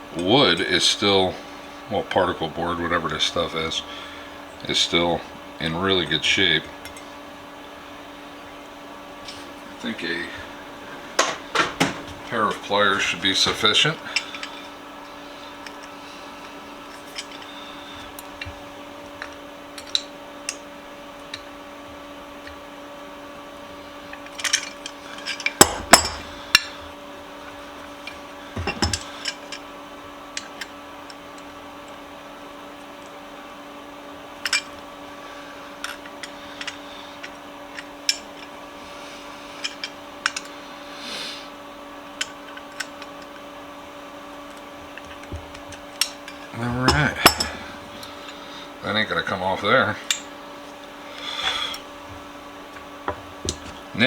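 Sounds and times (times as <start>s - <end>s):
steady hum: 0.0s - 54.0s
metal tools clicking and clinking: 16.9s - 18.6s, 19.2s - 20.6s, 24.1s - 26.8s, 28.0s - 29.6s, 34.4s - 34.8s, 35.8s - 38.5s, 39.6s - 40.5s, 44.5s - 48.4s.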